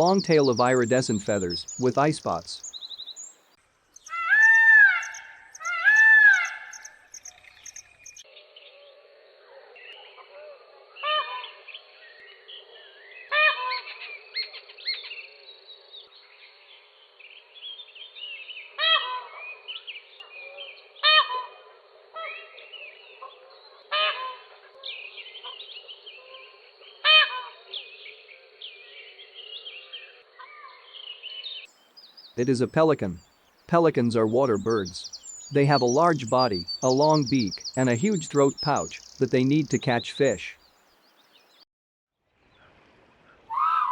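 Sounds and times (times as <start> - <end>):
small birds chirping: 0.0 - 8.2, 31.6 - 41.6
peacock honking calls: 13.3 - 13.9, 18.8 - 19.4, 21.0 - 21.6, 23.9 - 24.4, 27.0 - 27.6.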